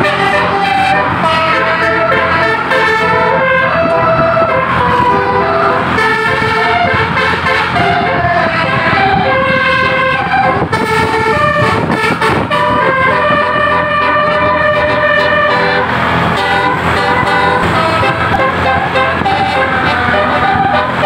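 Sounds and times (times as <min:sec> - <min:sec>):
engine running: 0:00.0 - 0:21.0
musical air horn playing a tune: 0:00.0 - 0:21.0.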